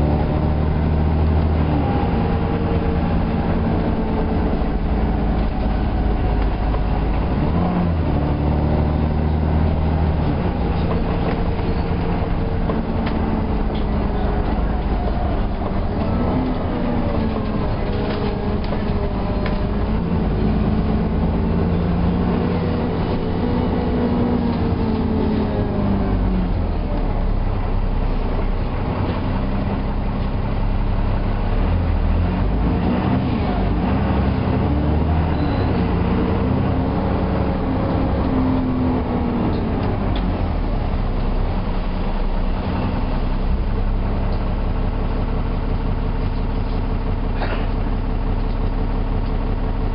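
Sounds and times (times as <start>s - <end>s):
low rumble: 0.0s - 32.6s
bus engine whine: 0.0s - 49.9s.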